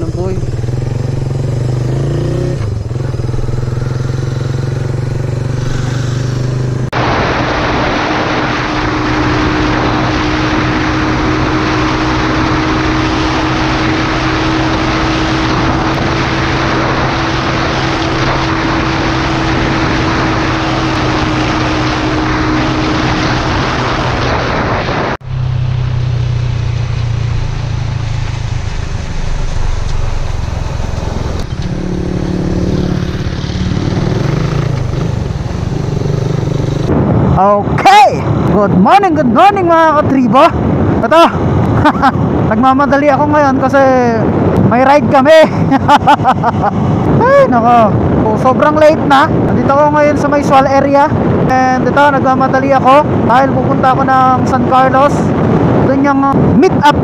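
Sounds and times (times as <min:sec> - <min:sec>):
motorcycle engine running: 0:00.0 - 0:07.0, 0:08.0 - 0:24.3, 0:25.2 - 0:37.5
rushing noise: 0:00.0 - 0:57.0.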